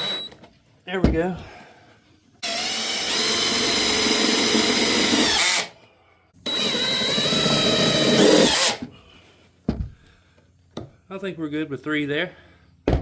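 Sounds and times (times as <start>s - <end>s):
power drill driving screws: 0.0s - 0.3s, 2.4s - 5.7s, 6.4s - 8.8s.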